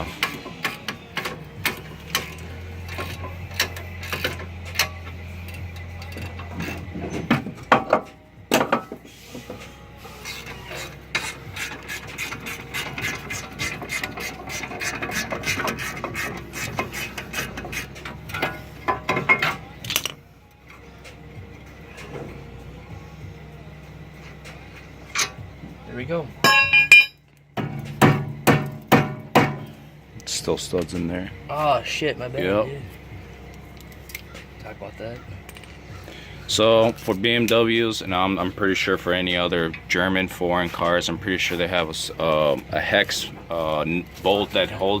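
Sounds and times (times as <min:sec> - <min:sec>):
metallic knocks: 0:06.0 - 0:09.1, 0:11.1 - 0:20.2, 0:26.4 - 0:29.7.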